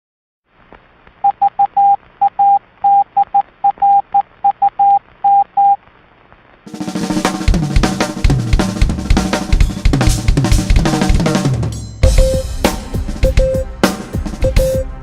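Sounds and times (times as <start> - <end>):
morse code beeps: 1.2 - 5.8, 13.3 - 13.6, 14.4 - 14.8
drum kit playing: 6.7 - 15.0.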